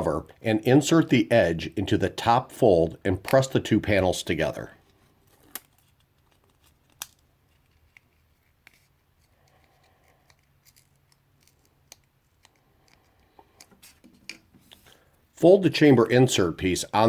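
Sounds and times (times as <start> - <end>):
cardstock clicks and crinkles: 5.2 - 14.5.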